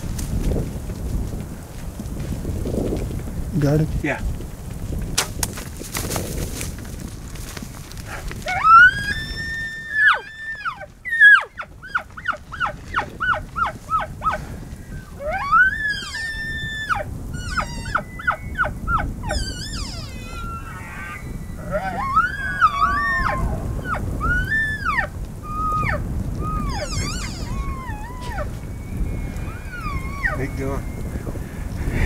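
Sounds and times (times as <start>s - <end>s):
wind noise: 0.0s - 32.0s
elk bugling: 8.1s - 32.0s.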